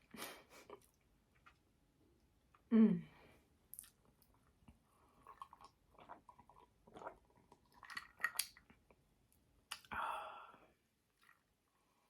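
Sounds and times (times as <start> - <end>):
person chewing food: 3.8 - 9.0.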